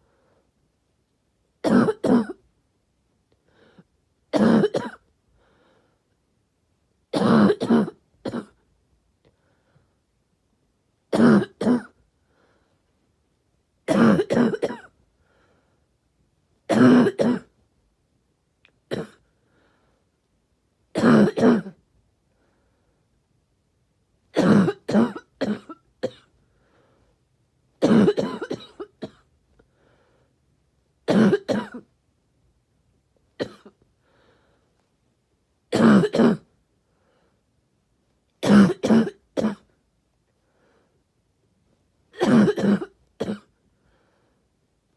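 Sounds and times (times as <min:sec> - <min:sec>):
person barky coughing: 0:01.7 - 0:02.4, 0:04.4 - 0:05.0, 0:07.2 - 0:08.6, 0:11.2 - 0:12.0, 0:13.9 - 0:14.9, 0:16.7 - 0:17.5, 0:21.0 - 0:21.8, 0:24.4 - 0:26.2, 0:27.8 - 0:29.2, 0:31.1 - 0:31.8, 0:33.4 - 0:33.8, 0:35.8 - 0:36.5, 0:38.4 - 0:39.7, 0:42.2 - 0:43.5.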